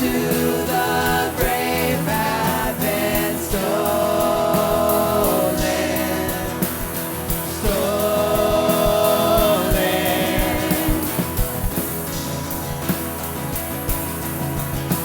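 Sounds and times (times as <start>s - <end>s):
person singing: 0.0s - 11.9s
worship band playing: 0.0s - 13.4s
steady drum beat: 0.0s - 15.0s.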